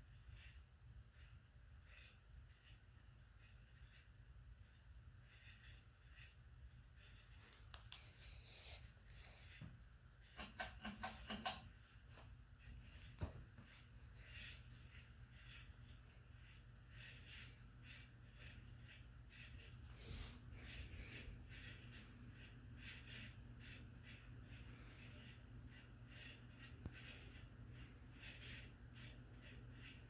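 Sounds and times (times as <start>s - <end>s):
scratchy bearing ticking: 0.0s - 8.4s, 9.2s - 30.0s
ceiling fan hum: 0.0s - 30.0s.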